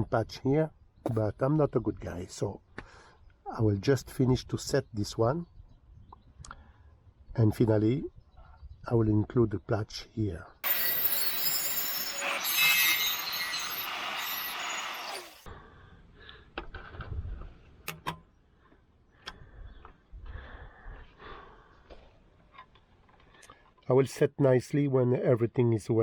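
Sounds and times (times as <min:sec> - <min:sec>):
harsh metalworking on sheet steel: 0:10.6 - 0:15.5.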